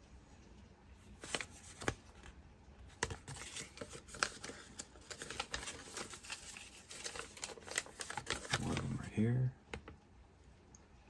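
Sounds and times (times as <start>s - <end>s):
packaging rustling: 1.1s - 2.3s, 2.9s - 9.1s.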